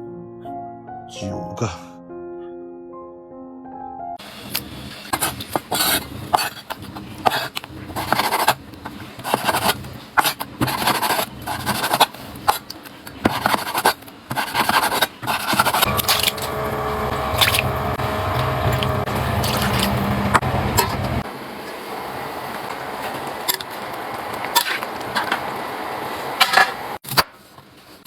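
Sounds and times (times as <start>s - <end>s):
scraping and rubbing strokes: 5.0s - 16.5s.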